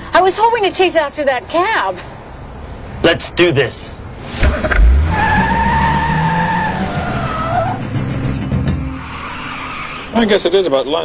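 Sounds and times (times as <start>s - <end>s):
car engine revving: 4.2s - 10.5s
tyres squealing: 4.3s - 11.0s.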